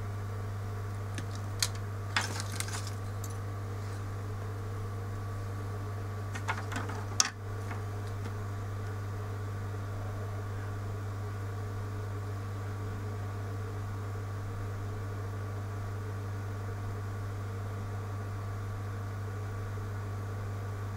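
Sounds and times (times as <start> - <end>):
low electrical hum: 0.0 - 20.9.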